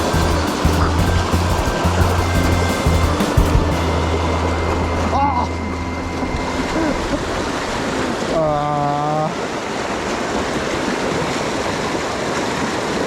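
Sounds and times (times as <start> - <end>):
stream rushing over rocks: 6.6 - 13.0.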